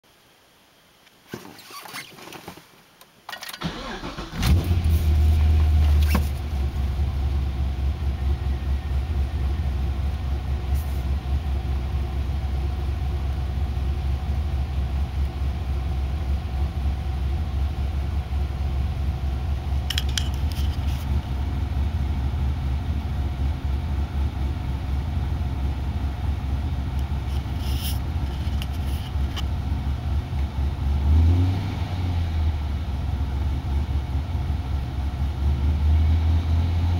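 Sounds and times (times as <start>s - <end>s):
car engine starting and idling: 3.3s - 36.9s.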